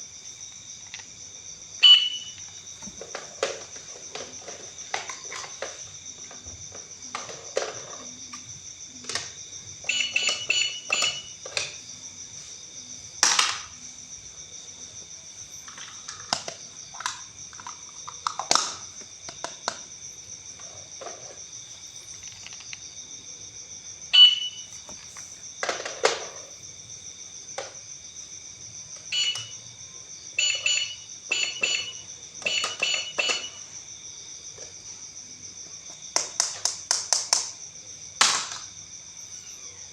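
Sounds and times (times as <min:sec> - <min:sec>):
toy cash register beeps: 0:01.8 - 0:02.5, 0:09.8 - 0:11.8, 0:24.2 - 0:24.9, 0:29.1 - 0:29.6, 0:30.4 - 0:33.8
plastic clicks and knocks: 0:09.0 - 0:09.4, 0:15.7 - 0:19.8, 0:22.2 - 0:22.8.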